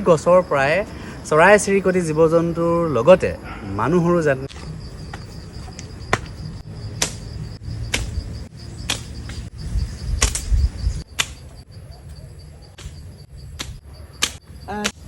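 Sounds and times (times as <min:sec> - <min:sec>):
pulsing insect trill: 0:00.0 - 0:15.0
sharp clicks: 0:10.2 - 0:11.6, 0:13.6 - 0:15.0.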